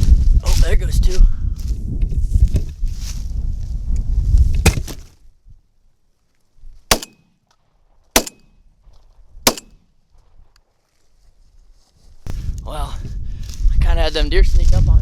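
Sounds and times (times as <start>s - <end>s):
low rumble on microphone: 0.0s - 5.0s, 12.2s - 15.0s
shotgun shots: 6.9s - 7.4s, 8.2s - 8.6s, 9.4s - 9.8s.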